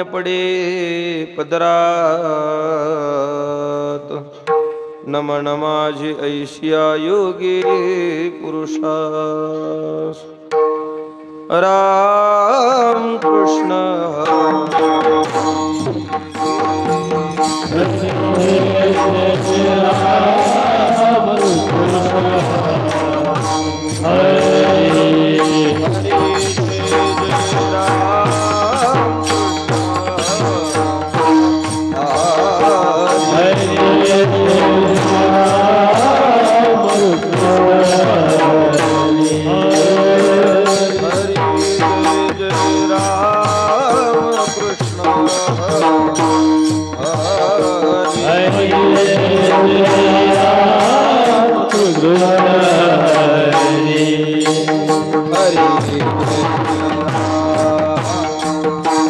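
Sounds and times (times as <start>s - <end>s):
sustained melody: 7.0s - 59.0s
hand drum: 13.2s - 59.0s.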